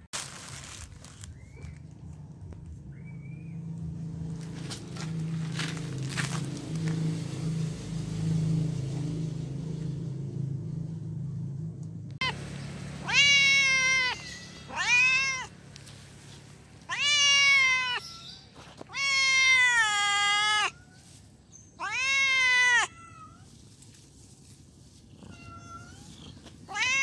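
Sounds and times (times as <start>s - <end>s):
low steady hum: 0.2s - 16.9s
cat meowing: 13.0s - 15.6s, 16.9s - 21.1s, 21.8s - 23.5s, 25.1s - 27.0s.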